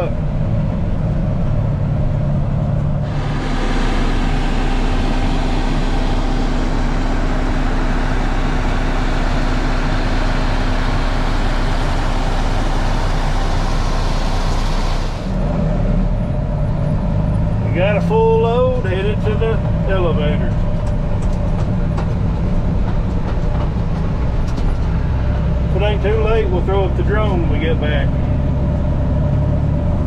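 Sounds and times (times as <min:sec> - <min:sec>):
diesel truck engine humming: 0:00.0 - 0:30.0
loud machine noise: 0:03.0 - 0:16.3.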